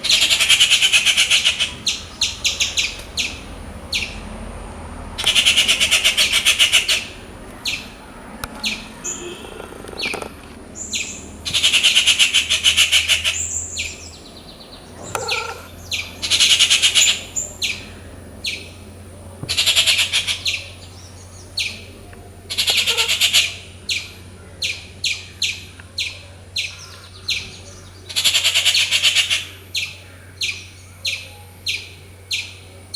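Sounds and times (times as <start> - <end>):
bird harsh grating calls: 0.0 - 4.3, 5.2 - 8.0, 8.6 - 21.9, 22.5 - 31.2
short sharp bird notes: 14.6 - 17.9.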